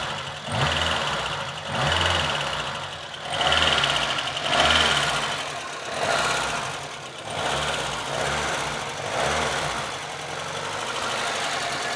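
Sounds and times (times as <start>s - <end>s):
knocking car engine revving: 0.0s - 11.9s.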